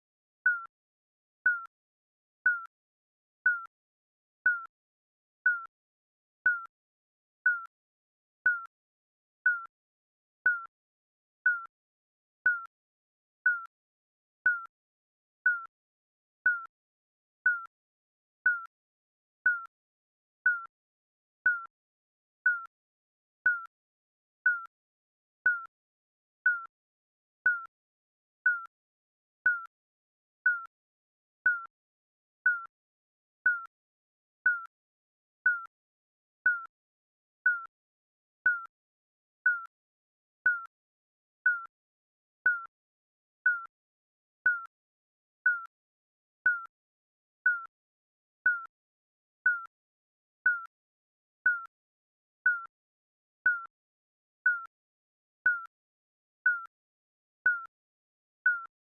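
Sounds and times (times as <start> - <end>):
digital timer beeping: 0.5 - 0.7, 1.5 - 1.7, 2.5 - 2.7, 3.5 - 3.7, 4.5 - 4.7, 5.5 - 5.7, 6.5 - 6.7, 7.5 - 7.7, 8.5 - 8.7, 9.5 - 9.7, 10.5 - 10.7, 11.5 - 11.7, 12.5 - 12.7, 13.5 - 13.7, 14.5 - 14.7, 15.5 - 15.7, 16.5 - 16.7, 17.5 - 17.7, 18.5 - 18.7, 19.5 - 19.7, 20.5 - 20.7, 21.5 - 21.7, 22.5 - 22.7, 23.5 - 23.7, 24.5 - 24.7, 25.5 - 25.7, 26.5 - 26.7, 27.5 - 27.7, 28.5 - 28.7, 29.5 - 29.7, 30.5 - 30.7, 31.5 - 31.7, 32.5 - 32.7, 33.5 - 33.7, 34.5 - 34.7, 35.5 - 35.7, 36.5 - 36.7, 37.5 - 37.7, 38.5 - 38.7, 39.5 - 39.7, 40.4 - 40.7, 41.5 - 41.7, 42.5 - 42.7, 43.5 - 43.7, 44.5 - 44.7, 45.5 - 45.7, 46.5 - 46.7, 47.5 - 47.7, 48.5 - 48.7, 49.5 - 49.7, 50.5 - 50.7, 51.5 - 51.7, 52.5 - 52.7, 53.4 - 53.7, 54.5 - 54.7, 55.5 - 55.7, 56.5 - 56.7, 57.4 - 57.7, 58.5 - 58.7.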